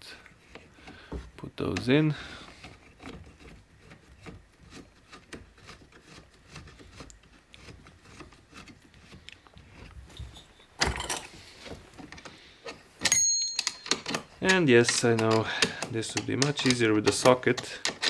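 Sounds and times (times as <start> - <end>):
metal parts scraping and rattling: 0.4 - 18.0
screws turned by hand tool: 12.6 - 18.0
sharp metallic clink: 13.0 - 14.1.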